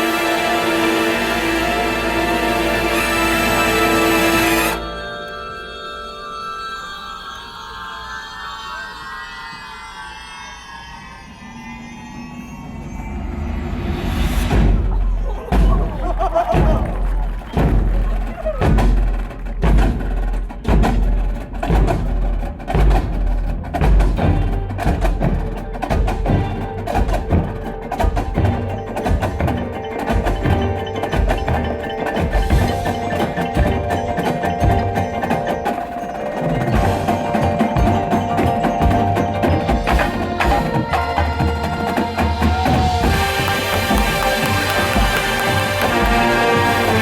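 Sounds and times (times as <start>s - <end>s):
drum and bugle corps playing: 0.0s - 4.9s, 14.5s - 47.0s
marimba: 0.0s - 47.0s
held brass chords: 39.1s - 47.0s.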